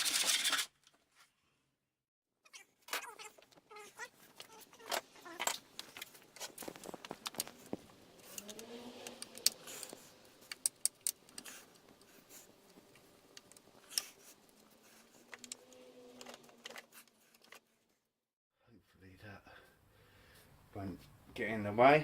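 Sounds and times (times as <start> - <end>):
objects clicking and knocking: 0.0 - 1.0, 4.4 - 12.0.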